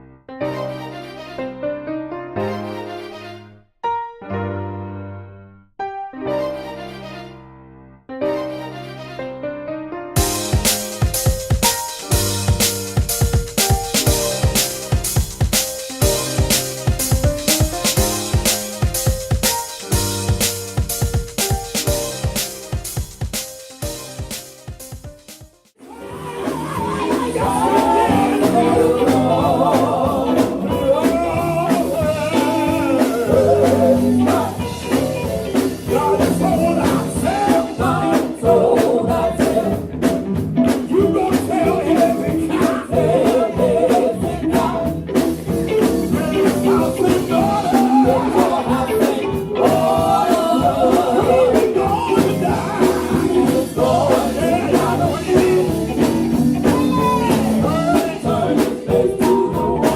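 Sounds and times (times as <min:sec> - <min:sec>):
gospel music: 0:00.0 - 0:59.9
steady beat: 0:10.2 - 0:25.7
person singing: 0:25.8 - 0:39.9, 0:40.7 - 0:45.0, 0:45.9 - 0:59.9
guitar: 0:25.8 - 0:59.9.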